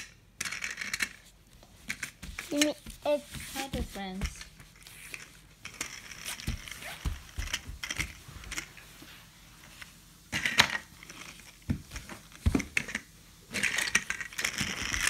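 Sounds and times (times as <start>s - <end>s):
plastic toy trucks clicking: 0.0s - 1.2s, 12.8s - 15.0s.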